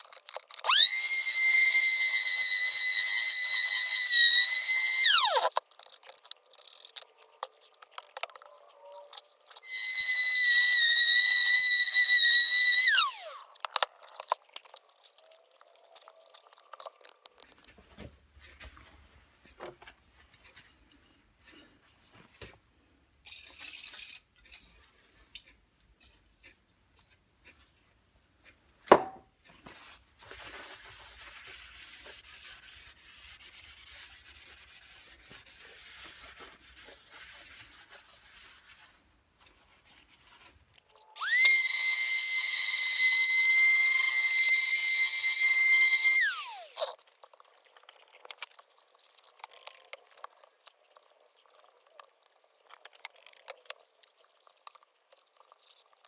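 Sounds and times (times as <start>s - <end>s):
small power tool motor whining: 0.5s - 5.6s, 9.6s - 13.6s, 41.2s - 47.0s
small knocks and handling noise: 16.0s - 22.7s.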